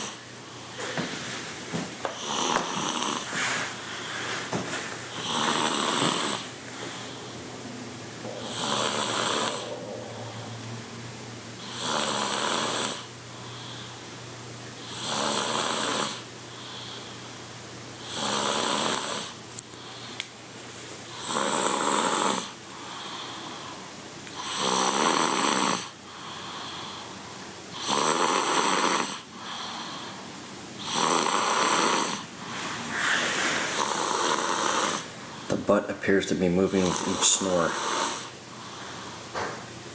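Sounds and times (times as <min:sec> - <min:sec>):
soft breathing: 0:00.0 - 0:10.9, 0:26.0 - 0:27.5, 0:31.8 - 0:36.2, 0:36.8 - 0:39.4
loud snoring: 0:02.0 - 0:03.7, 0:04.3 - 0:07.2, 0:08.2 - 0:10.9, 0:11.6 - 0:13.1, 0:14.8 - 0:16.3, 0:18.0 - 0:19.4, 0:21.1 - 0:22.6, 0:24.4 - 0:26.0, 0:27.7 - 0:29.9, 0:30.8 - 0:35.6, 0:36.2 - 0:38.3.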